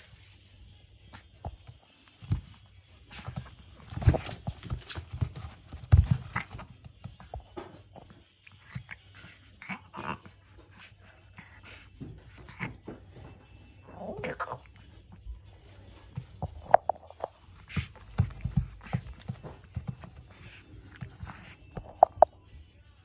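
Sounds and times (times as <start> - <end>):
knocks and thumps: 16.2 - 22.3.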